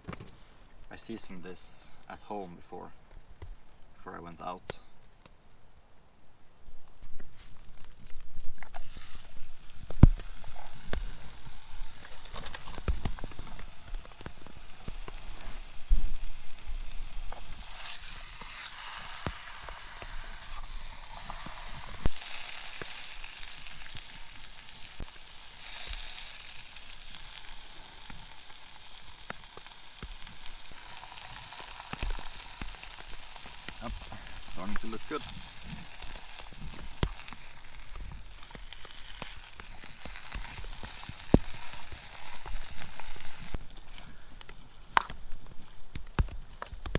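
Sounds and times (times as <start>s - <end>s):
chicken frying and sizzling: 0.0s - 46.9s.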